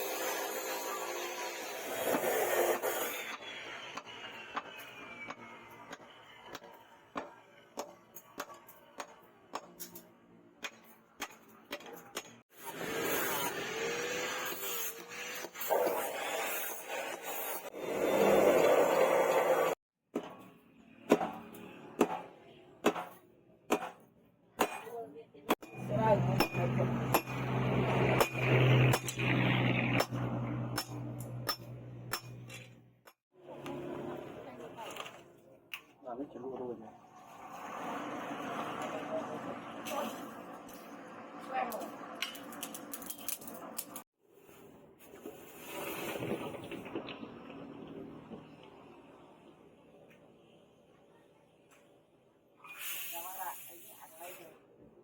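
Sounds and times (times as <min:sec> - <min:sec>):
hammer striking steel on anvil: 0:21.1 - 0:24.0, 0:24.6 - 0:29.2, 0:29.9 - 0:32.7.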